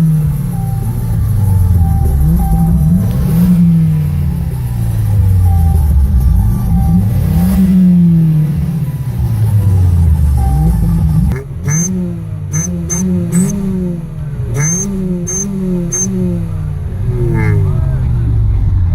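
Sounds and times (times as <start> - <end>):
car engine revving: 0.0 - 18.9.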